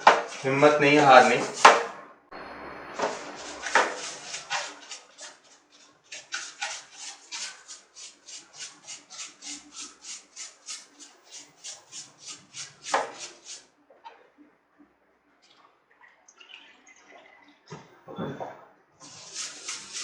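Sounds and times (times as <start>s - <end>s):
brush scrubbing wet fan: 0.0s - 13.8s, 19.0s - 20.0s.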